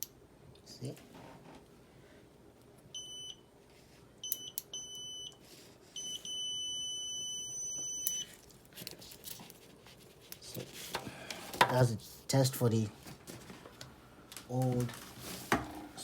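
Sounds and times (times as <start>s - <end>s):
multimeter continuity beeps: 3.0s - 3.5s, 4.2s - 5.4s, 6.0s - 8.3s.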